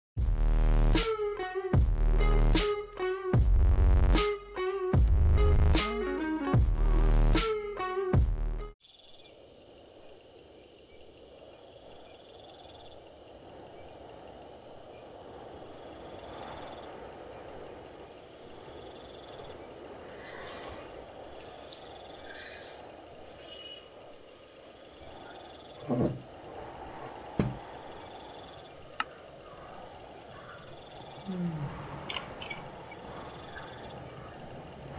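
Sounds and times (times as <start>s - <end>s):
crickets chirping: 8.8s - 34.9s
thumps: 25.8s - 26.3s, 27.4s - 27.6s.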